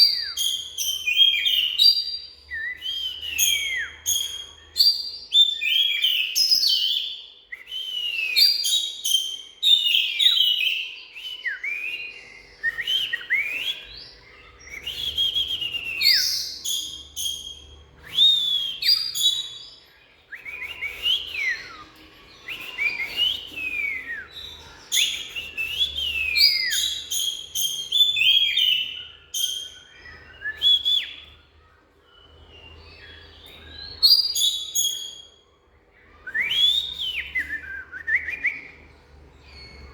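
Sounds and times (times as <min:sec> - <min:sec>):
bird singing whistled phrases: 0:00.0 - 0:39.9.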